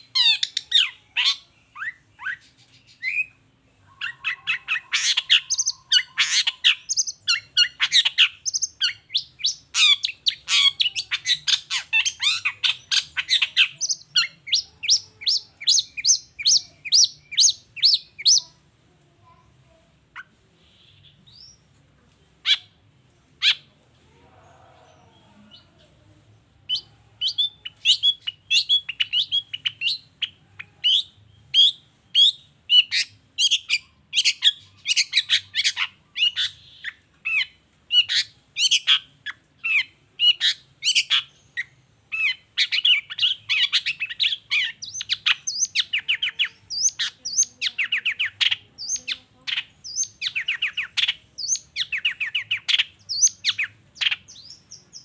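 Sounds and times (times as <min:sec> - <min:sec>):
bird singing sharp repeated notes: 0:00.0 - 0:18.5.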